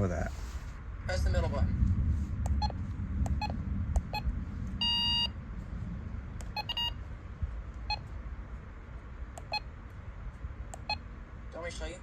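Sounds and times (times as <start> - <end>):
longer beep: 2.6 - 5.4, 6.5 - 7.0
key beeps with clicks: 6.5 - 6.9, 7.9 - 8.1, 9.4 - 9.7, 10.8 - 11.0.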